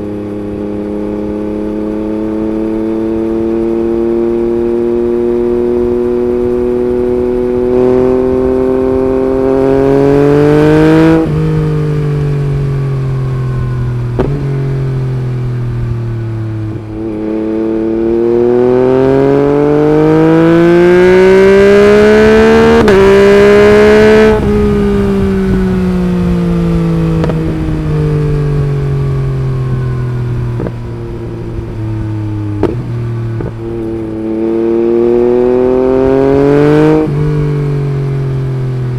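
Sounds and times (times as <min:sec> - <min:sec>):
motorcycle engine revving: 0:00.0 - 0:38.9
exhaust cracks: 0:11.2 - 0:17.1, 0:22.8 - 0:34.3.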